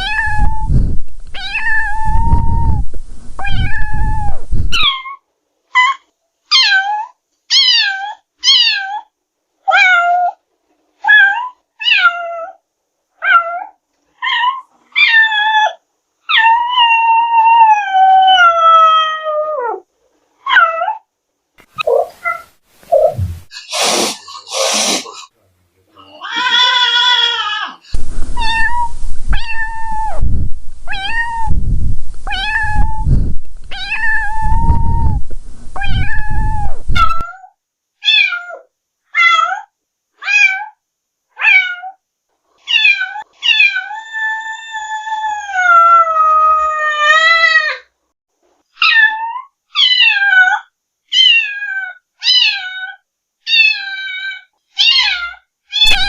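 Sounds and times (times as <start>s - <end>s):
cat meowing: 0.0s - 0.7s, 1.4s - 2.8s, 3.4s - 5.2s, 26.0s - 30.2s, 30.9s - 31.6s, 32.2s - 33.1s, 33.7s - 35.2s, 35.8s - 40.8s, 41.4s - 42.0s, 42.7s - 47.9s, 48.8s - 56.0s
low rumbling noise: 0.0s - 4.8s, 22.8s - 23.6s, 27.9s - 37.2s.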